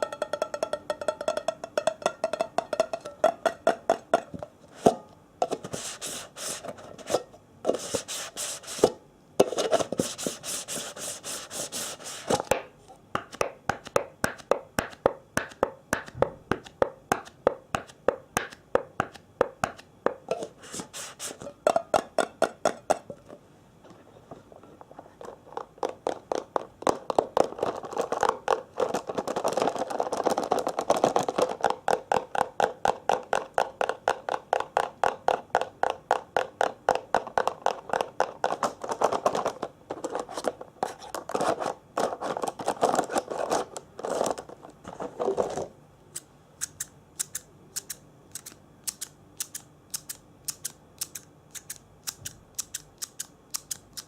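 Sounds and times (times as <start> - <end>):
tapping on hard objects: 0.0 - 5.7, 12.5 - 20.5, 21.6 - 23.2, 25.5 - 39.6.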